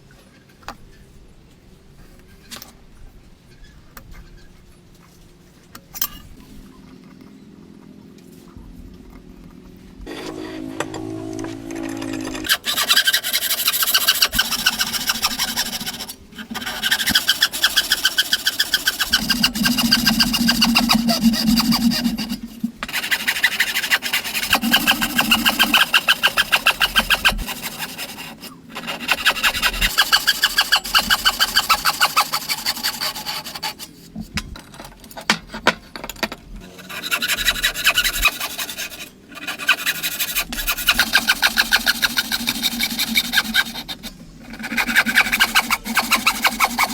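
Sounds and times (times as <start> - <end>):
hand tool rasping wood: 10.1 - 34.1, 36.6 - 46.9.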